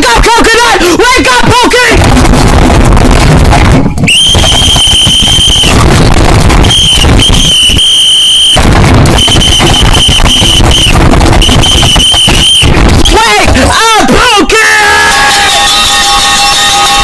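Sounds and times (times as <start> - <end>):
blaring distorted noise: 0.0 - 17.0
shrill high-pitched tone: 14.8 - 17.0.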